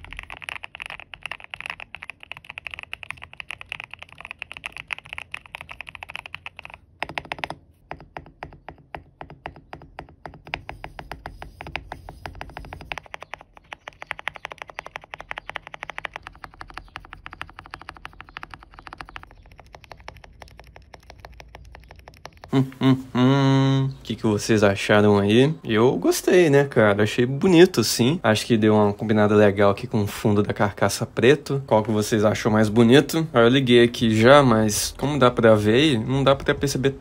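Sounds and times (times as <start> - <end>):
fast mechanical keyboard typing: 0.0 - 22.5.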